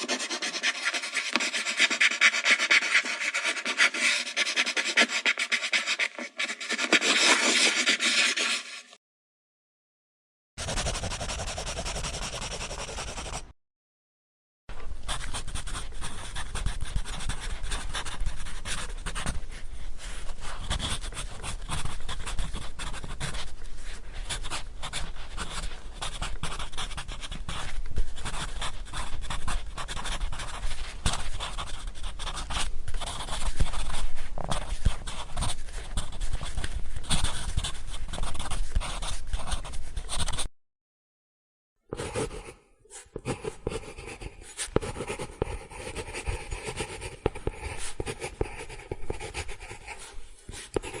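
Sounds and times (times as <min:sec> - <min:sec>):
pencil scratching on paper: 0:00.0 - 0:09.0, 0:10.6 - 0:13.5, 0:15.1 - 0:19.6, 0:20.2 - 0:40.5, 0:41.9 - 0:51.0.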